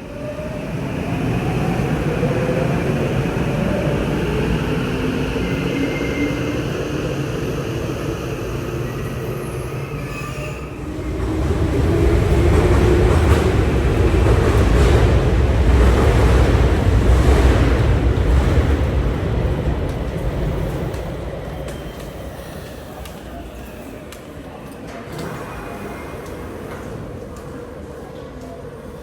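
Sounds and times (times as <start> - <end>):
train running on rails: 0.0 - 29.0.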